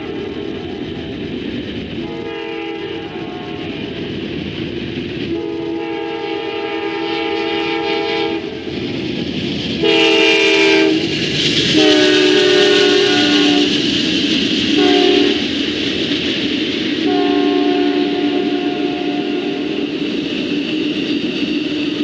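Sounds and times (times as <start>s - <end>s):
train rumbling: 0.0s - 22.0s
train air horn blasts: 2.0s - 3.6s, 5.3s - 8.5s, 9.8s - 11.1s, 11.7s - 13.8s, 14.8s - 15.4s, 17.0s - 19.9s.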